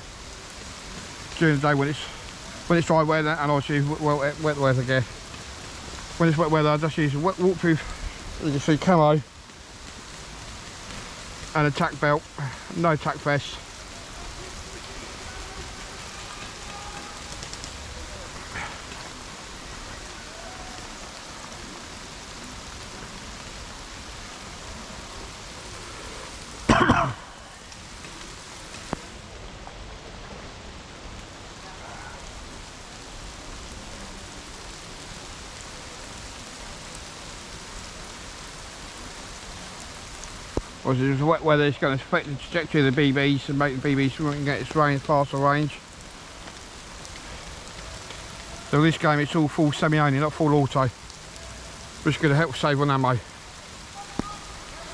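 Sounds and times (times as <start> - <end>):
steady rain falling: 0.0 - 54.9
faint distant voices: 12.4 - 38.0, 51.2 - 54.9.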